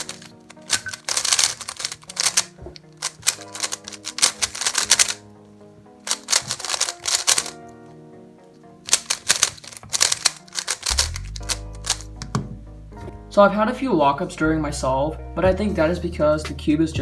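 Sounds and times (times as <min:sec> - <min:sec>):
plastic puzzle cube clicking: 0:00.0 - 0:05.2, 0:06.1 - 0:07.6, 0:08.9 - 0:12.4.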